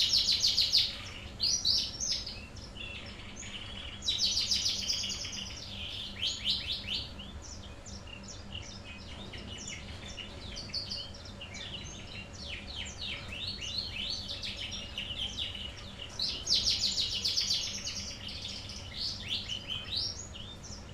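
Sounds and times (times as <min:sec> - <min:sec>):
songbird chirps and trills: 0:00.0 - 0:20.9.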